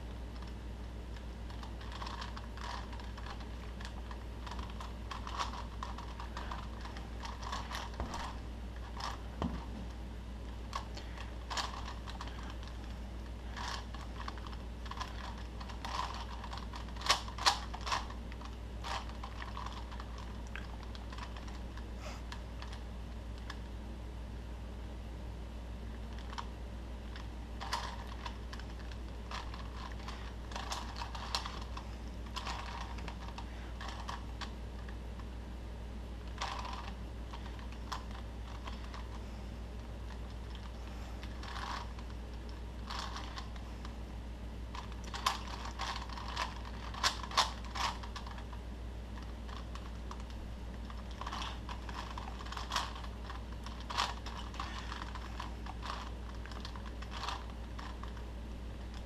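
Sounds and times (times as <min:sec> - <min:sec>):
steady low hum: 0:00.0 - 0:59.0
plastic puzzle cube clicking: 0:01.5 - 0:09.2, 0:11.5 - 0:12.8, 0:13.6 - 0:18.1, 0:18.8 - 0:21.6, 0:27.1 - 0:34.9, 0:36.3 - 0:39.1, 0:40.5 - 0:42.1, 0:42.9 - 0:43.6, 0:44.7 - 0:48.5, 0:49.2 - 0:58.2.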